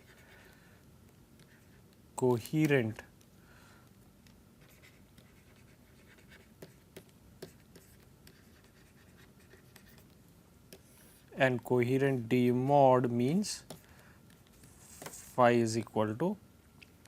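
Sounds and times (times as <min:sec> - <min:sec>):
pen scratching on paper: 0:04.6 - 0:10.1.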